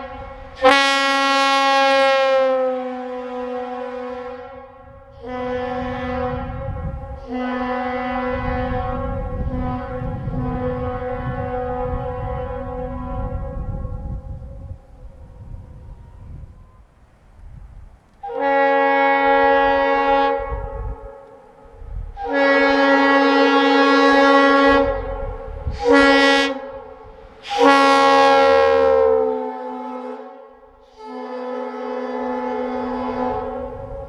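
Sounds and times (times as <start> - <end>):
multi-chime locomotive air horn: 0.0 - 14.2, 22.2 - 34.0.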